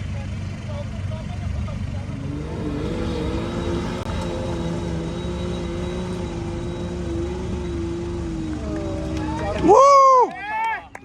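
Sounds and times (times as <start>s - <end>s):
engine running steadily: 0.0s - 11.0s.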